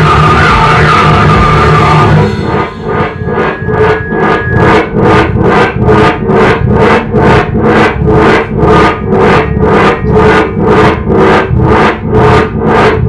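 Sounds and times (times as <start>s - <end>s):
harsh synthesizer pulses: 0.0s - 13.0s
low droning bass: 0.0s - 13.0s.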